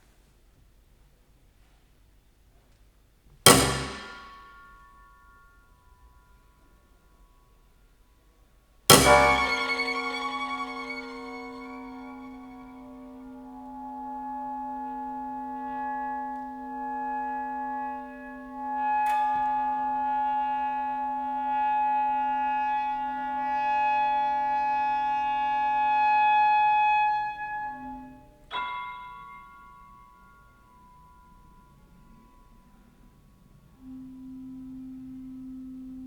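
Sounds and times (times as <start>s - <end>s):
sharp struck attack: 8.9s - 13.2s
struck note ringing: 8.9s - 13.2s
chamber ensemble held notes: 8.9s - 13.4s.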